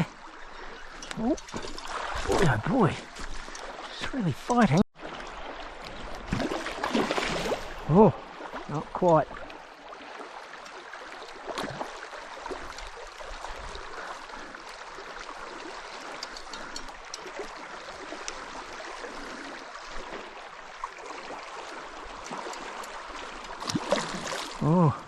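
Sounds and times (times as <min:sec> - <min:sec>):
faint clicks: 0:16.0 - 0:17.5.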